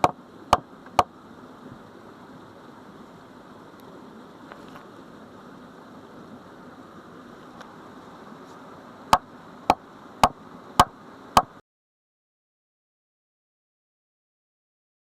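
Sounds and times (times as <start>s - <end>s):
faint steady hiss: 0.0s - 11.6s
sharp knocks: 10.2s - 11.5s.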